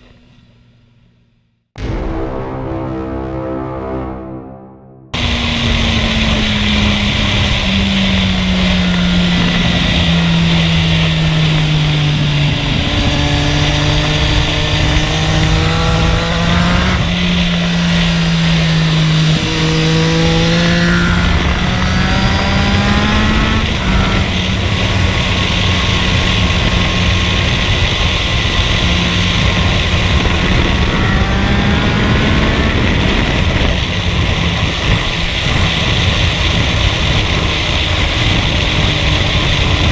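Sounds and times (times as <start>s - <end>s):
steady rushing noise: 1.8s - 8.2s.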